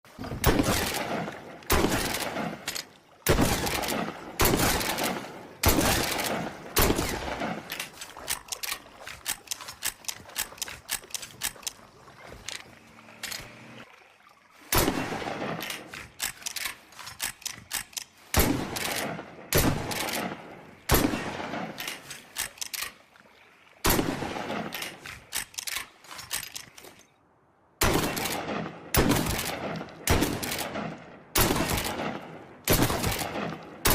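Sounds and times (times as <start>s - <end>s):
loud shotgun blasts: 0.4s - 2.7s, 3.3s - 7.8s, 14.7s - 15.6s, 18.3s - 21.8s, 27.8s - 33.9s.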